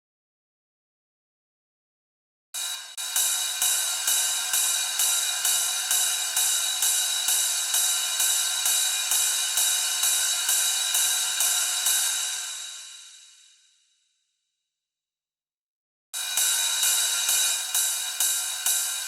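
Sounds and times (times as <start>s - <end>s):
metallic hi-hat loop: 2.6s - 13.4s, 16.2s - 19.0s.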